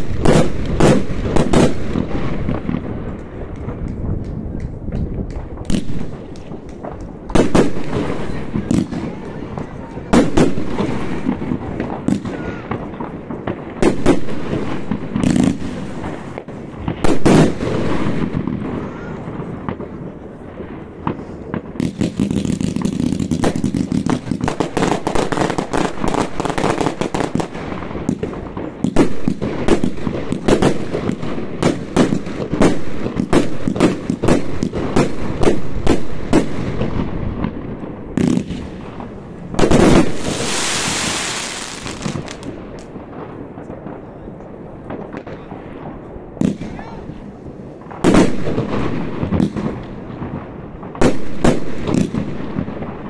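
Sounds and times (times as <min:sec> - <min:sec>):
rapid firework cracks: 0:00.0 - 0:44.1, 0:47.8 - 0:53.0
fireworks bangs: 0:00.0 - 0:53.0
hissing crackle: 0:40.0 - 0:43.0.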